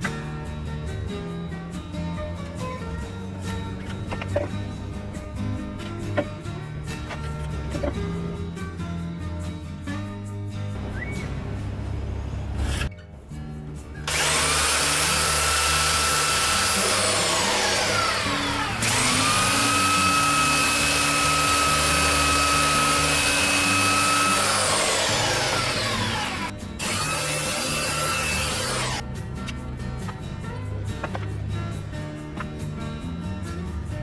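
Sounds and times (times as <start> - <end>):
background music: 0.0 - 34.0
electric sander whining: 14.1 - 29.0.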